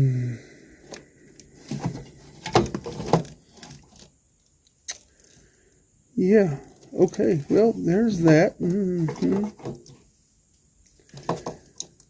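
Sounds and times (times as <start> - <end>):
wires and connectors clicking and rattling: 10.8 - 12.0.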